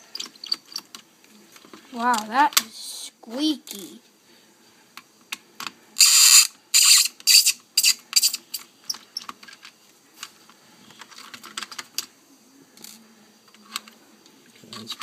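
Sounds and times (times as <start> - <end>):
screw squeaking: 0.0 - 0.9, 6.0 - 9.3.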